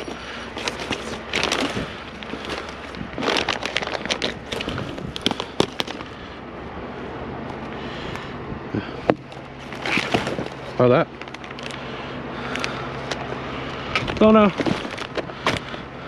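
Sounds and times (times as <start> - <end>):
plastic crinkling: 0.0 - 6.2, 9.2 - 11.8, 14.0 - 15.8
clicks and knocks of junk: 9.0 - 11.8, 13.9 - 15.8.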